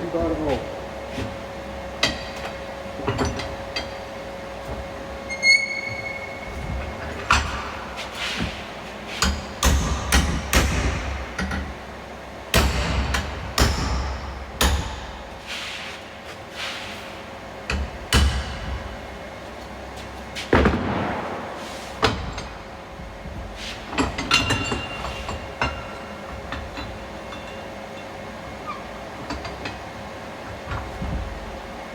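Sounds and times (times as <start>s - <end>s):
hammer striking steel: 9.2s - 11.6s, 12.5s - 15.4s.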